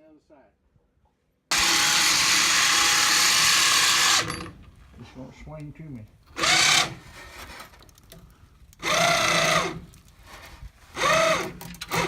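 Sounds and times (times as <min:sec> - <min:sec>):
electric winch whining: 0:01.5 - 0:04.6, 0:06.4 - 0:07.0, 0:11.0 - 0:12.0.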